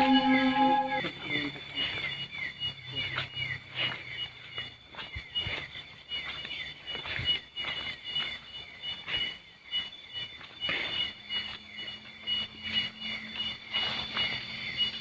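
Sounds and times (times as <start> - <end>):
high short animal note repeated: 0.0 - 1.1
falling chirps: 0.0 - 1.5.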